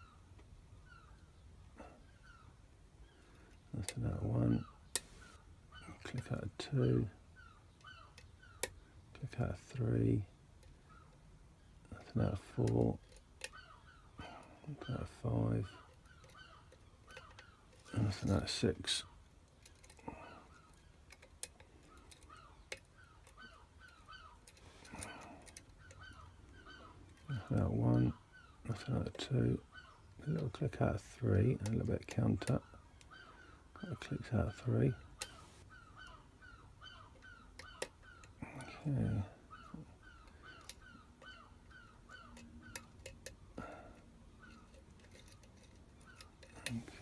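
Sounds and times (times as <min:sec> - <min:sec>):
squeaky chirping: 0:13.4 - 0:19.1.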